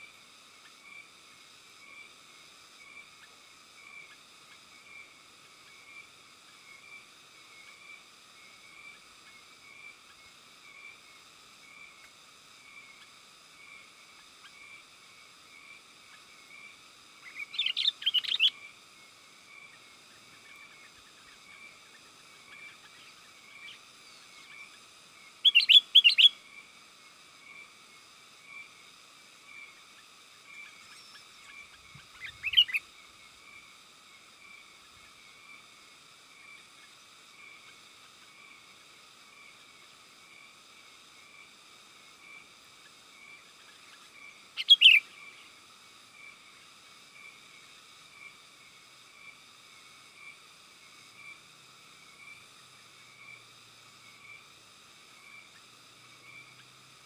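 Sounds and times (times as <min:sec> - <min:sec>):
bird chattering song: 0:17.2 - 0:18.6, 0:25.4 - 0:26.4, 0:30.6 - 0:32.9, 0:43.7 - 0:45.5.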